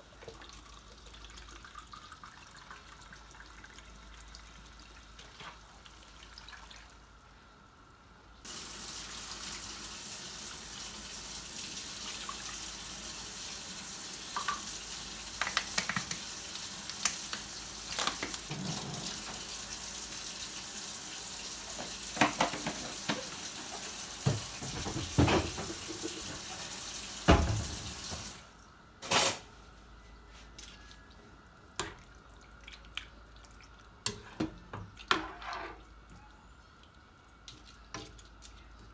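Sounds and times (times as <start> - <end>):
tap running into sink: 21.7 - 28.4.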